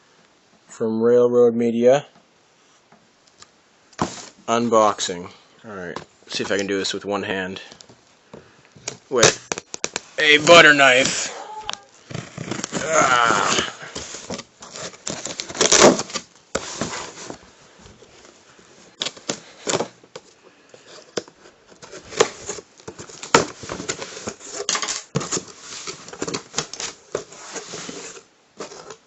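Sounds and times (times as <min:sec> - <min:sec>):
cardboard rustling: 0:04.0 - 0:04.4, 0:08.8 - 0:29.0
knife cutting packing tape: 0:12.2 - 0:16.2.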